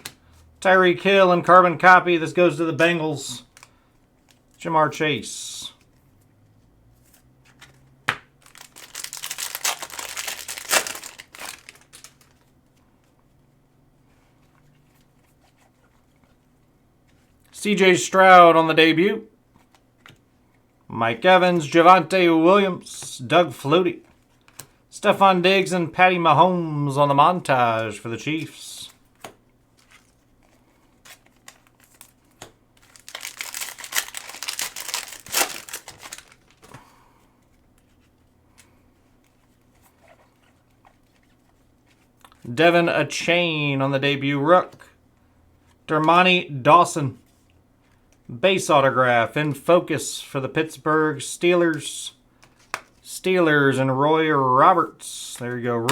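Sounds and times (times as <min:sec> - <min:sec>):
wrapper crinkling: 0:08.4 - 0:12.6, 0:31.0 - 0:36.8
wrapper tearing snap: 0:08.5 - 0:12.3, 0:31.5 - 0:36.6.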